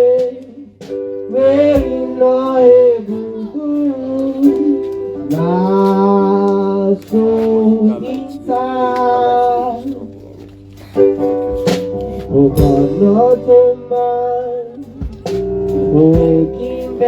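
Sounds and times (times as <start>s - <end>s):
instrumental accompaniment: 0.0s - 17.0s
person singing long notes: 12.3s - 17.0s.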